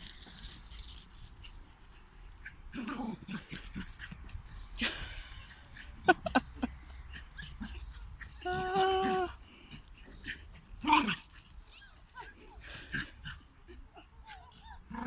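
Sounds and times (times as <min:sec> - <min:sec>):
puppy whining and yelping: 0:06.9 - 0:15.0.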